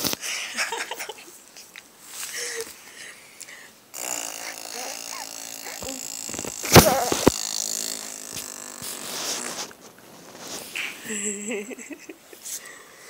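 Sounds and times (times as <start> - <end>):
lips blowing raspberry: 4.0 - 9.7.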